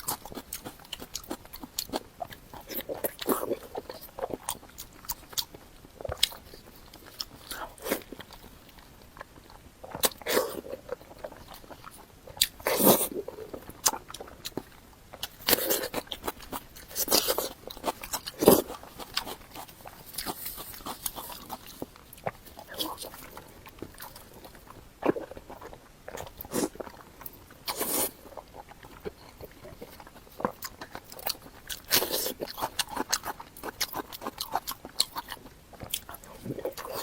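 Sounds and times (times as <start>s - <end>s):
person biting and chewing: 0.0s - 37.0s.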